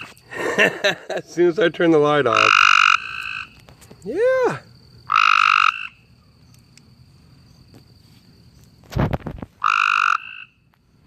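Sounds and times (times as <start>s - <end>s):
frog croaking: 1.4s - 4.1s, 5.0s - 6.2s, 9.6s - 10.7s.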